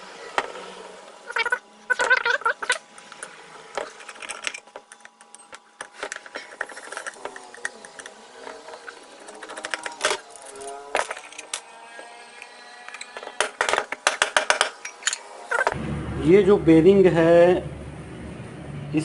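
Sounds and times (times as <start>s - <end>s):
metal fan parts clinking: 12.9s - 15.3s.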